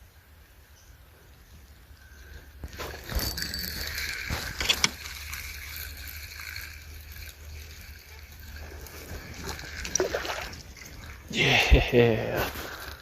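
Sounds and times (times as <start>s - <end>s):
fishing reel whirring: 1.6s - 13.0s
reel clicks: 2.0s - 11.3s.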